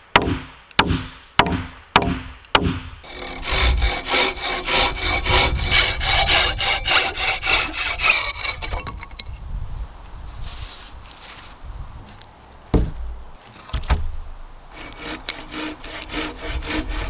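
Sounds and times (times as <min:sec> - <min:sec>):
axe chopping wood: 0:00.1 - 0:03.8
hand saw cutting wood: 0:03.0 - 0:09.2, 0:14.7 - 0:17.0.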